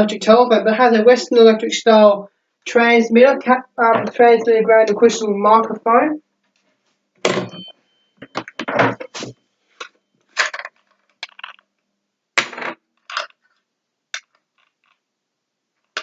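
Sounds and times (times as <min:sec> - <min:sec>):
small parts clinking and scraping: 0:10.4 - 0:11.7.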